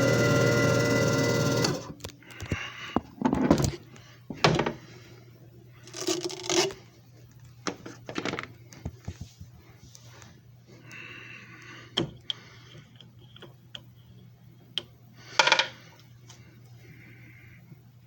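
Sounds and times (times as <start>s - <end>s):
disc repair machine humming: 0.0s - 2.2s.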